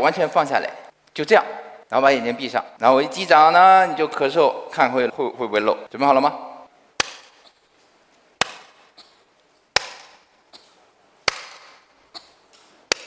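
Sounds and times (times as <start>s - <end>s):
sharp hand claps: 11.3s - 11.9s.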